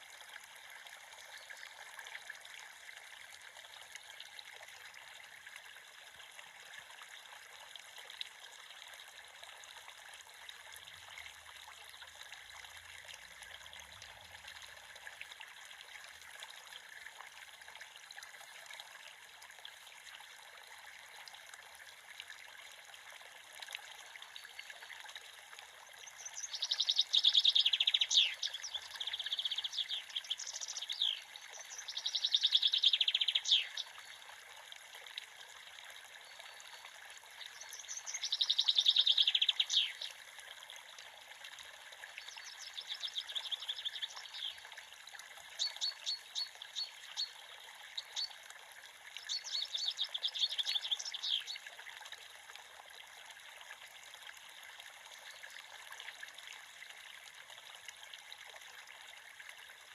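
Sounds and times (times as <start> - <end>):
creek water flowing: 0.0 - 59.9
songbird trilling: 26.3 - 33.8, 37.7 - 40.1.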